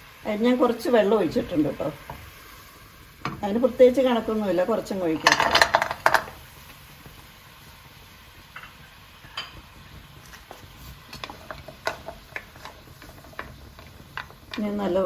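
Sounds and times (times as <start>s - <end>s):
spoon tapping a pan: 3.2s - 6.5s, 8.5s - 15.0s.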